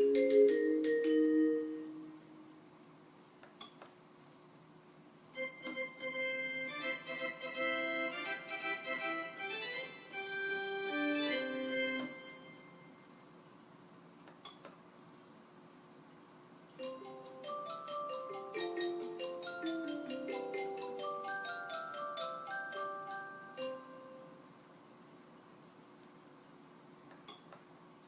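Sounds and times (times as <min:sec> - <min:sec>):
toy piano chime melody: 0:00.0 - 0:02.1, 0:16.8 - 0:24.4.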